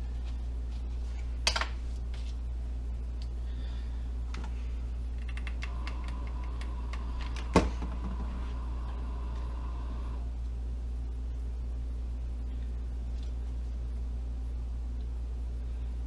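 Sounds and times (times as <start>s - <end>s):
steady low hum: 0.0s - 16.0s
faint high whine: 5.6s - 14.8s.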